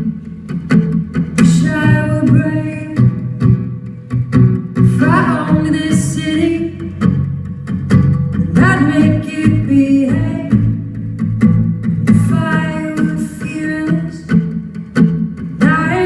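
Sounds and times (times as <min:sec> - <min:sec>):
wordless sung vocals: 0:04.9 - 0:07.0, 0:08.5 - 0:11.0, 0:12.0 - 0:14.4, 0:15.6 - 0:16.0.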